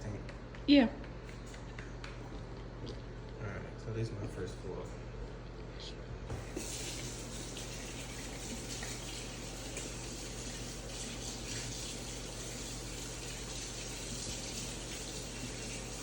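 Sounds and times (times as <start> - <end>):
chicken wings frying in oil: 6.4 - 16.0.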